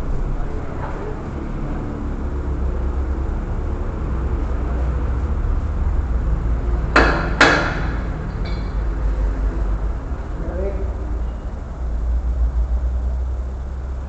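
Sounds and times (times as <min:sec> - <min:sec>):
steady low rumble: 0:00.0 - 0:07.0
sharp knocks: 0:06.9 - 0:08.8.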